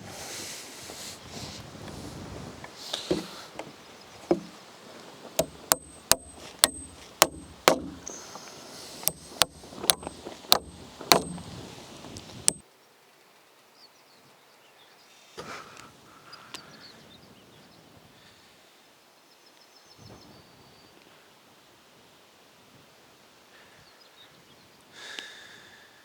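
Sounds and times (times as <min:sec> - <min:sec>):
faint outdoor background: 0:00.0 - 0:26.0
hammering on roof: 0:03.0 - 0:04.6, 0:05.2 - 0:08.3, 0:09.0 - 0:12.6.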